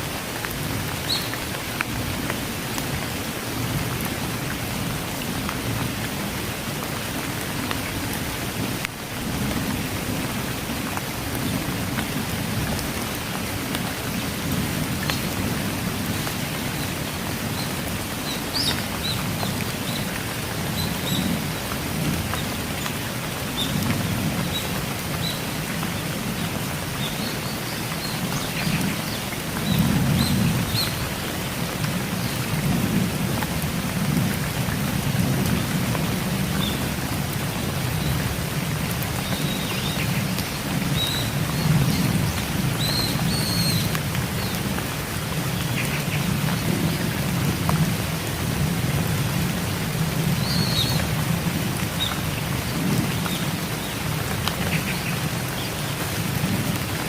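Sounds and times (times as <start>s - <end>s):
steady rain: 0.0s - 57.0s.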